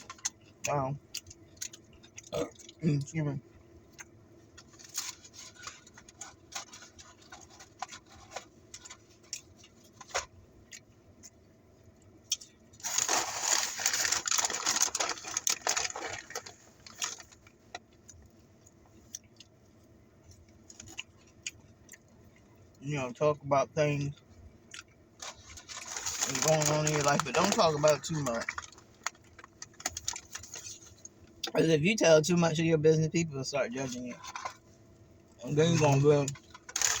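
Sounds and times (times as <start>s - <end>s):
paper and foil crinkling: 4.6s - 10.3s, 12.8s - 17.7s, 25.2s - 31.1s, 35.4s - 37.0s
packaging clicks and rustles: 12.8s - 17.4s, 25.2s - 30.8s, 36.3s - 37.0s.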